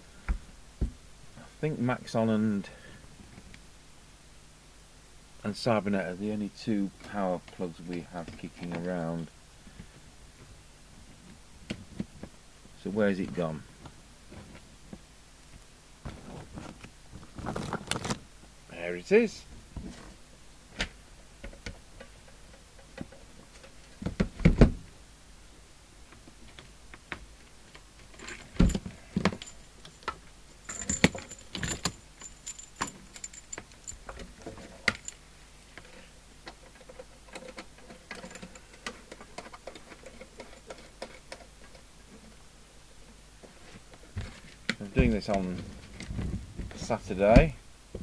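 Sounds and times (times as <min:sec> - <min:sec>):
metallic jingle: 0:28.2 - 0:34.0.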